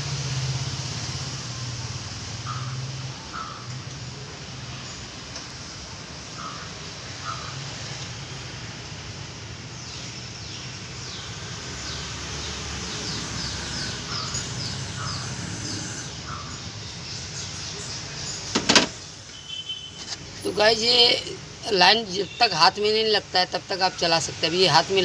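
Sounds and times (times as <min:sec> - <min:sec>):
crows cawing: 0:02.5 - 0:03.7, 0:06.4 - 0:07.6.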